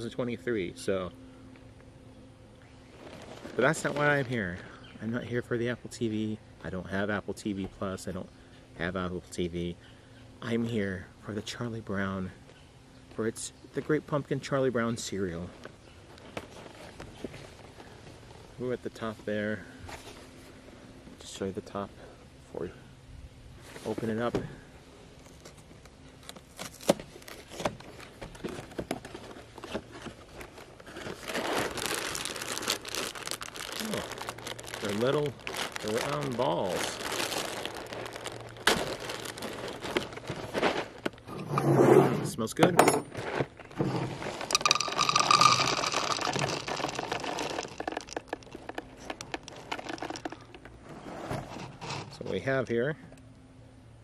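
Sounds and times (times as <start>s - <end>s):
plastic bag crinkling: 26.4s - 41.3s, 43.8s - 50.7s
cereal pouring into a bowl: 31.3s - 38.1s, 44.3s - 50.4s.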